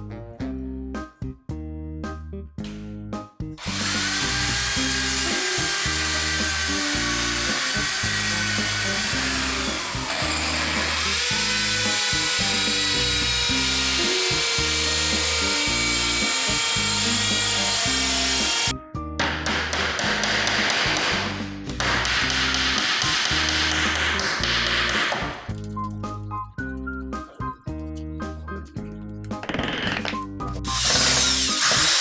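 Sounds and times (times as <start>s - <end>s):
power tool motor whining: 3.6s - 18.7s, 30.7s - 32.0s.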